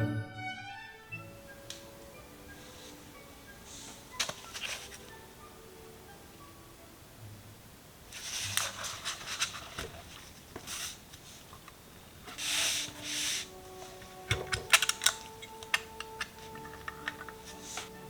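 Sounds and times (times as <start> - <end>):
hands rustling and sliding parts: 2.4 - 5.2, 8.1 - 18.0
small clicks and taps: 14.3 - 17.9.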